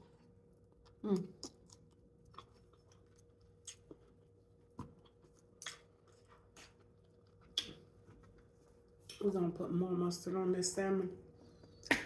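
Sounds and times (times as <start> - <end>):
faint steady hum: 0.0 - 12.0
faint chewing: 0.1 - 9.3.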